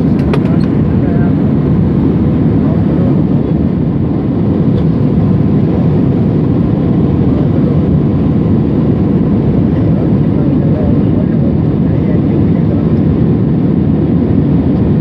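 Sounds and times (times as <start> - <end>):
aeroplane cabin drone: 0.0 - 15.0.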